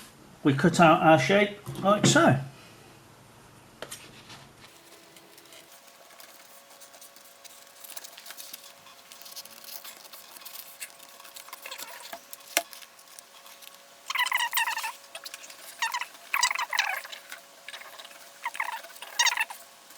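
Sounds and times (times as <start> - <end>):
faint steady hum: 0.0 - 19.9
scissors cutting plastic film: 4.7 - 19.6.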